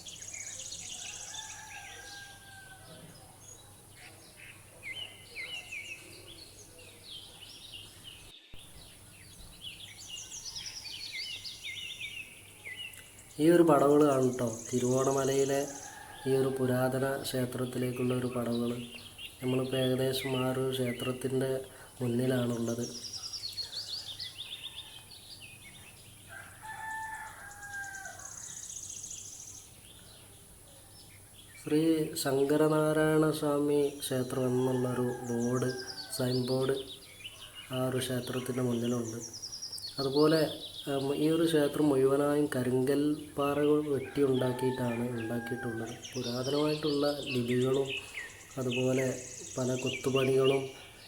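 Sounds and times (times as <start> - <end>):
wild birds chirping: 0.0 - 51.0
high-pitched background hiss: 5.7 - 23.6, 24.8 - 51.0.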